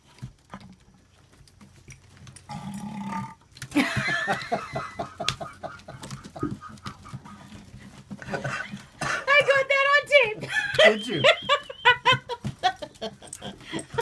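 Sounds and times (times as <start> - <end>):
dog belching: 2.5 - 3.4.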